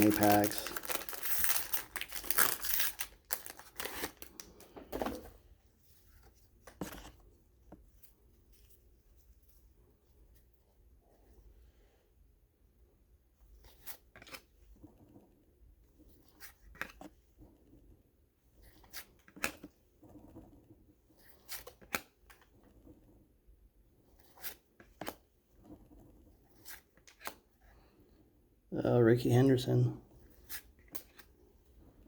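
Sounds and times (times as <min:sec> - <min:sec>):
cards sliding: 0:26.5 - 0:27.4.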